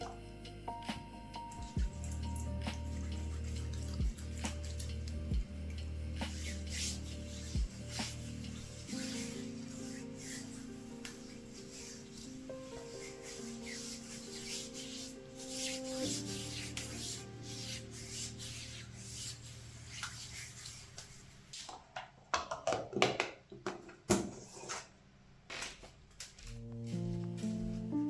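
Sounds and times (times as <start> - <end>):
soft music of held notes: 0.0 - 20.8, 26.4 - 28.0
rubbing or brushing strokes: 1.4 - 21.6.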